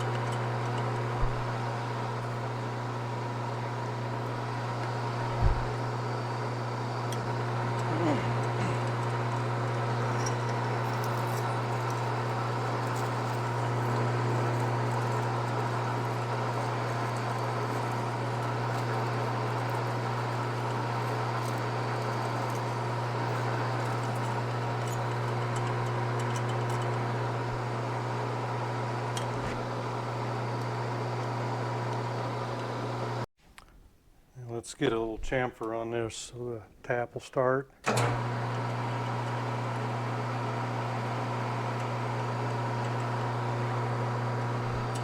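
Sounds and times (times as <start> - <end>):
drill bit cutting metal: 0.0 - 31.4
lathe motor hum: 0.0 - 33.3, 37.9 - 45.0.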